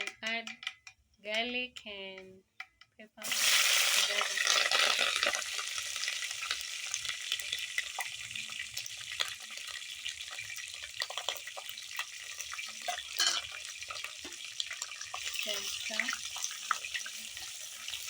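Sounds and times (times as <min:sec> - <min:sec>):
crackles and pops: 0:02.6 - 0:18.0
food sizzling in hot oil: 0:03.2 - 0:18.0.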